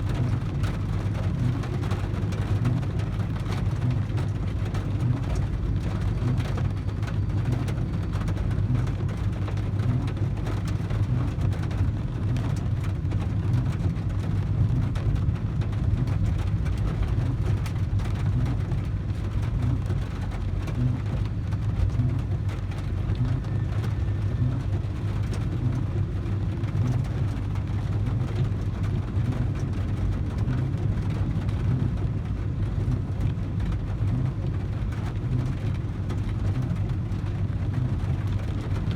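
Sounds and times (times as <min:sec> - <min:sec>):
constant low drone: 0:00.0 - 0:38.9
rain on car roof: 0:00.0 - 0:38.9.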